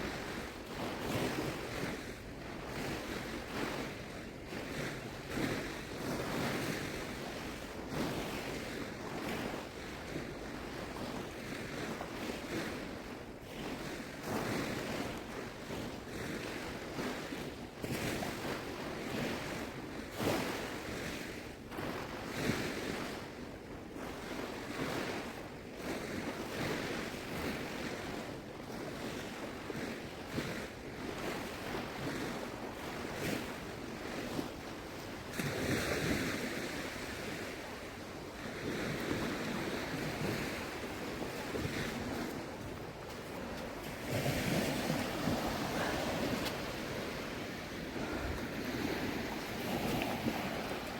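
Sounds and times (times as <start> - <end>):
small waves washing in surf: 0.0 - 50.9
wind buffeting microphone: 30.3 - 50.9
seawater sloshing: 38.5 - 50.9.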